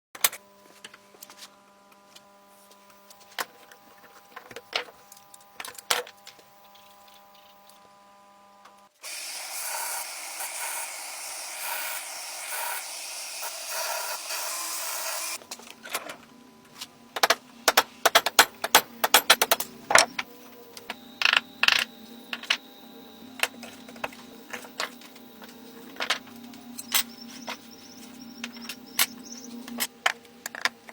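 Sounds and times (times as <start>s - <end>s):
hissing scraping noise: 9.0s - 15.4s.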